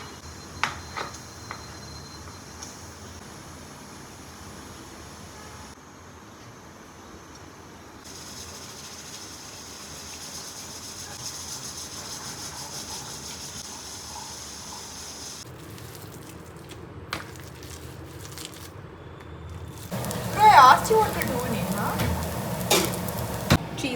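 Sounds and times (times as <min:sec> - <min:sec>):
cooking hiss with crackling: 0:06.4 - 0:16.6, 0:19.5 - 0:23.9.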